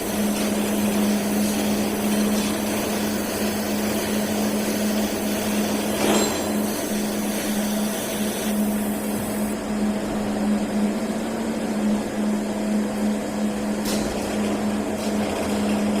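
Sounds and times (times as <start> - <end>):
welding hiss: 0.0 - 9.6
welding hum: 0.0 - 16.0.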